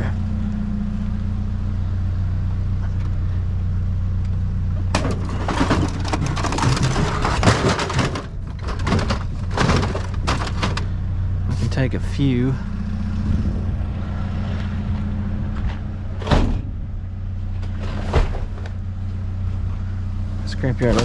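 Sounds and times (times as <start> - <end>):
vehicle engine idling: 0.0 - 21.0
hard plastic clattering and scraping: 4.9 - 10.9.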